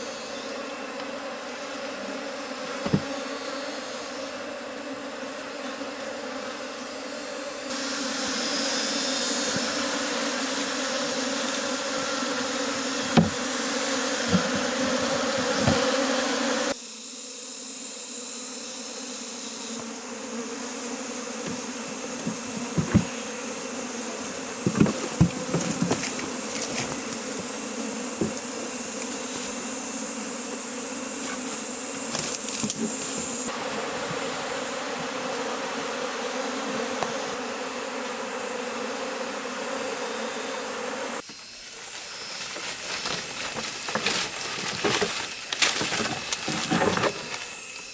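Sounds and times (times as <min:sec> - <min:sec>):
honeybees buzzing: 0:00.0 - 0:47.9
short knocks: 0:21.4 - 0:23.3, 0:24.2 - 0:27.6.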